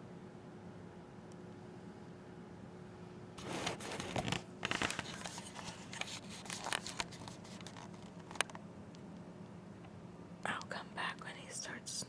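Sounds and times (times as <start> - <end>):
rustling and scratching: 3.4 - 8.6.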